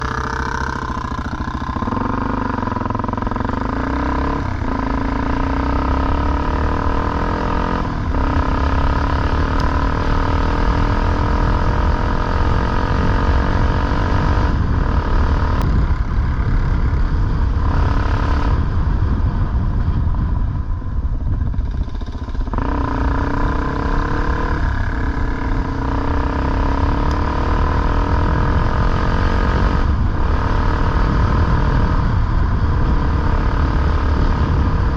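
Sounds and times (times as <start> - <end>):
motorcycle engine revving: 0.0 - 34.9
wind rumble on microphone: 0.0 - 34.9.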